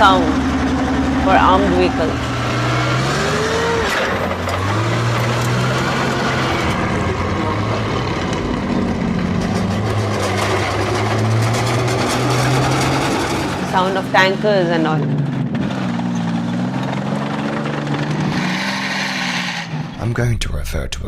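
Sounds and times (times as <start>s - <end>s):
tracks clanking: 0.0s - 20.1s
tracked vehicle engine running: 0.0s - 21.0s.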